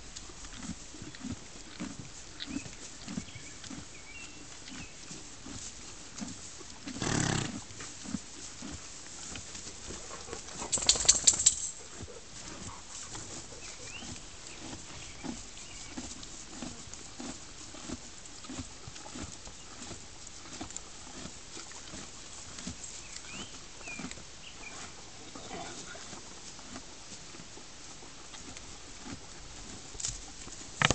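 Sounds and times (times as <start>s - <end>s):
horse chewing feed: 0.0s - 30.9s
sharp rattling clicks: 10.7s - 11.8s.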